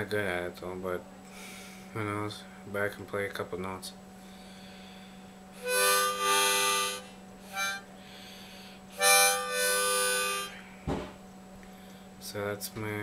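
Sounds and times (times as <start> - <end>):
harmonica chords: 5.5 - 10.8.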